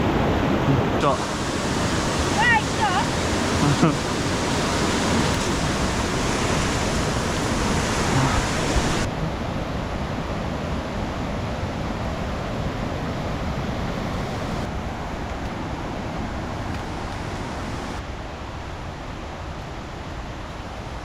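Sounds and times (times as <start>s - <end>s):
heavy rain: 0.0s - 9.2s
running water: 0.6s - 9.1s.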